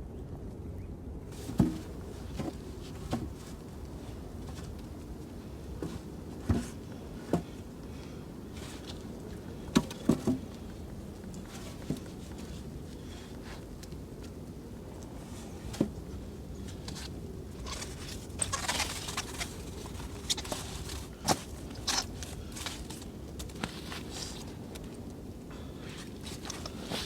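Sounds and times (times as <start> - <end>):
low background noise: 0.0 - 27.0.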